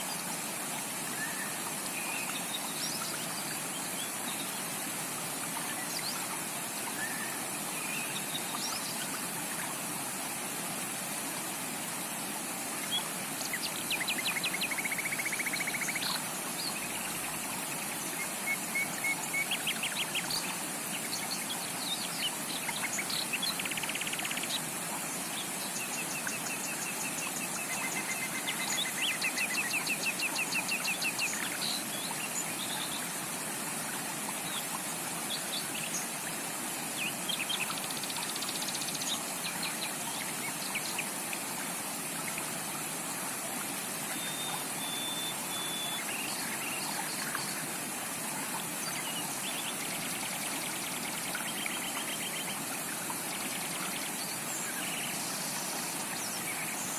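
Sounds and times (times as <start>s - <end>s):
bird whistle: 44.2s - 45.9s.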